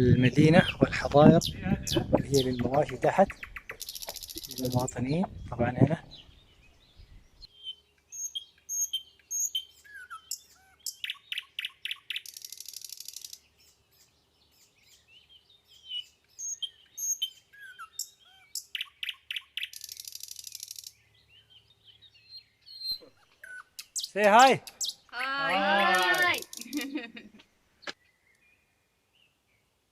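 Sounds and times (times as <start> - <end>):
bird chirps and trill: 0.0 - 27.0
buzzy bird rattle: 2.8 - 4.9, 12.2 - 13.4, 19.8 - 20.9, 26.0 - 26.9.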